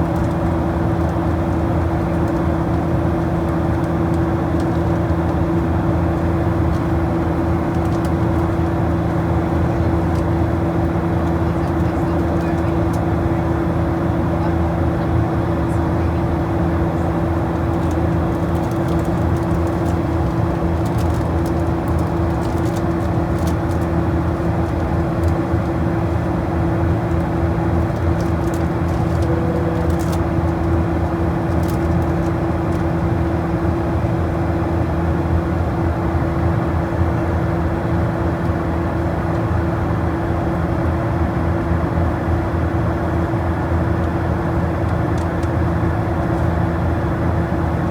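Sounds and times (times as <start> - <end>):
aircraft cabin drone: 0.0 - 36.5.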